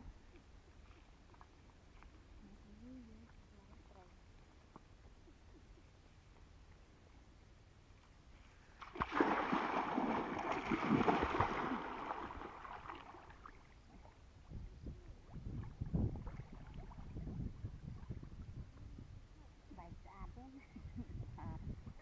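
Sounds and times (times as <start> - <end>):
water sloshing: 8.8 - 14.2
water splashing: 8.8 - 14.2.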